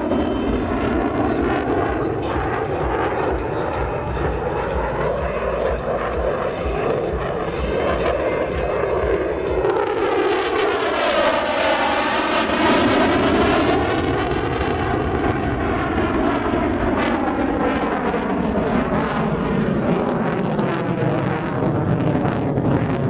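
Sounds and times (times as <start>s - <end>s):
fighter jet engine roaring: 0.0s - 23.0s.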